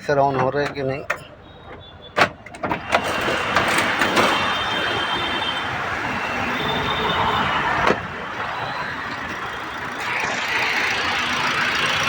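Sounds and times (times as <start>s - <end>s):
car engine running: 8.4s - 12.0s.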